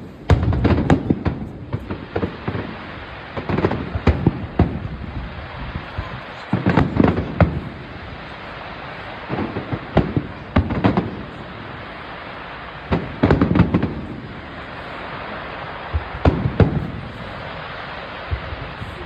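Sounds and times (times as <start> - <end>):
fireworks bursting with bangs: 0.0 - 19.0
steady hiss: 0.0 - 19.0.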